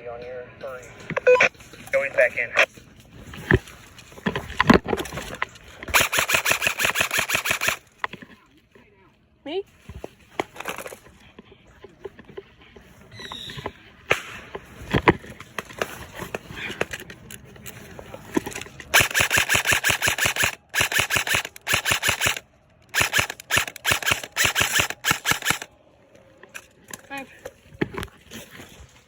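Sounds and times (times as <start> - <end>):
airsoft gun firing bursts: 5.9 - 7.9, 18.9 - 25.7
clicks and rustling: 9.9 - 13.0, 14.5 - 25.7.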